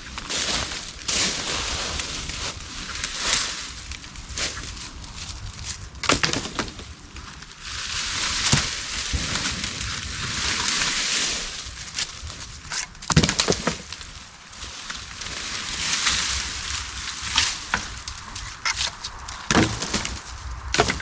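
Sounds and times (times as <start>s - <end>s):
leaf litter rustling: 0.0s - 21.0s
dry sticks snapping: 1.9s - 7.6s, 8.4s - 9.8s, 11.7s - 14.2s, 14.8s - 21.0s.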